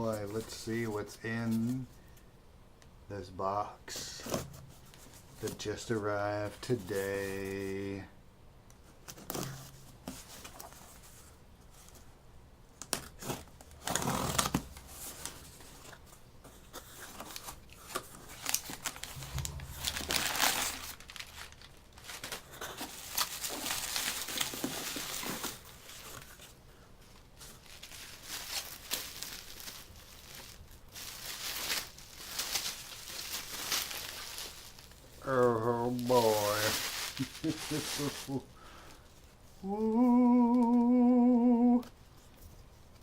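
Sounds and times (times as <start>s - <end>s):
cardboard tearing: 12.9s - 16.0s, 16.8s - 26.4s
packing material crinkling: 13.0s - 39.0s.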